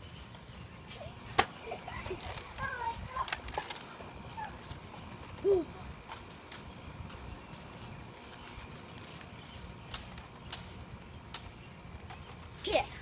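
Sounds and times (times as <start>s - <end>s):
bird chirping: 4.4s - 6.1s, 6.7s - 12.8s.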